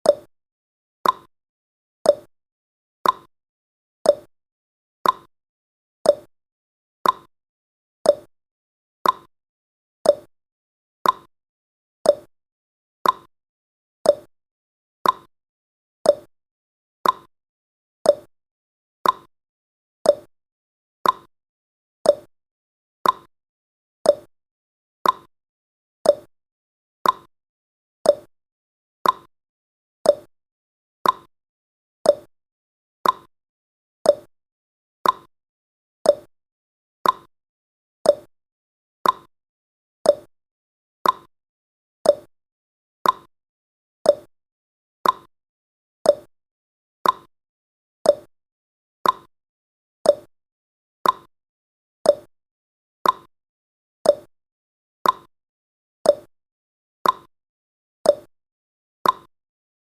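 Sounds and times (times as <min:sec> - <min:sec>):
timer ticking: 0:00.0 - 0:00.3, 0:01.0 - 0:01.3, 0:02.1 - 0:02.3, 0:03.0 - 0:03.3, 0:04.1 - 0:04.3, 0:05.0 - 0:05.3, 0:06.1 - 0:06.3, 0:07.0 - 0:07.3, 0:08.1 - 0:08.3, 0:09.0 - 0:09.3, 0:10.1 - 0:10.3, 0:11.0 - 0:11.3, 0:12.1 - 0:12.3, 0:13.0 - 0:13.3, 0:14.1 - 0:14.3, 0:15.0 - 0:15.3, 0:16.1 - 0:16.3, 0:17.0 - 0:17.3, 0:18.1 - 0:18.3, 0:19.0 - 0:19.3, 0:20.1 - 0:20.3, 0:21.0 - 0:21.3, 0:22.1 - 0:22.3, 0:23.0 - 0:23.3, 0:24.1 - 0:24.3, 0:25.0 - 0:25.3, 0:26.0 - 0:26.3, 0:27.0 - 0:27.3, 0:28.0 - 0:28.3, 0:29.0 - 0:29.3, 0:30.0 - 0:30.3, 0:31.0 - 0:31.3, 0:32.1 - 0:32.3, 0:33.0 - 0:33.3, 0:34.1 - 0:34.3, 0:35.0 - 0:35.3, 0:36.1 - 0:36.3, 0:37.0 - 0:37.3, 0:38.1 - 0:38.3, 0:39.0 - 0:39.3, 0:40.1 - 0:40.3, 0:41.0 - 0:41.3, 0:42.0 - 0:42.3, 0:43.0 - 0:43.3, 0:44.1 - 0:44.3, 0:45.0 - 0:45.3, 0:46.1 - 0:46.3, 0:47.0 - 0:47.3, 0:48.1 - 0:48.3, 0:49.0 - 0:49.3, 0:50.1 - 0:50.3, 0:51.0 - 0:51.3, 0:52.1 - 0:52.3, 0:53.0 - 0:53.3, 0:54.1 - 0:54.3, 0:55.0 - 0:55.3, 0:56.1 - 0:56.3, 0:57.0 - 0:57.3, 0:58.1 - 0:58.3, 0:59.0 - 0:59.3.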